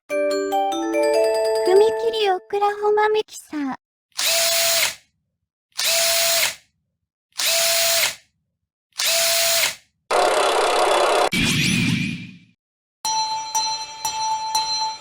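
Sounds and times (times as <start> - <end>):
buzzing drill-like bursts: 4.2 - 5.0, 5.8 - 6.6, 7.4 - 8.2, 9.0 - 11.3.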